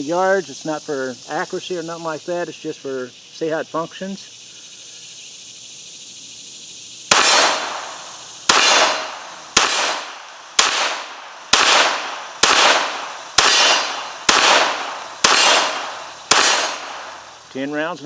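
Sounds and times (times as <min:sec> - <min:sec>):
pistol shots: 0:07.1 - 0:17.3.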